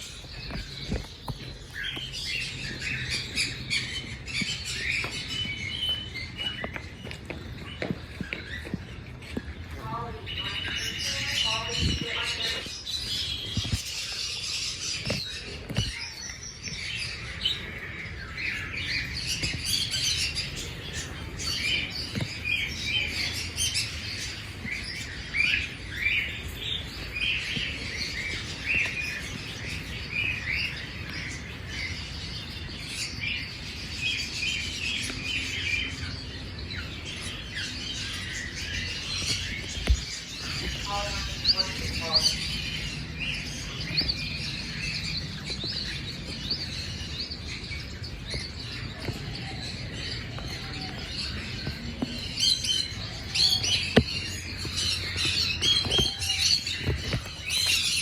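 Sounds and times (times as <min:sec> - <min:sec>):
small birds chirping and twittering: 0:00.0 - 0:58.0.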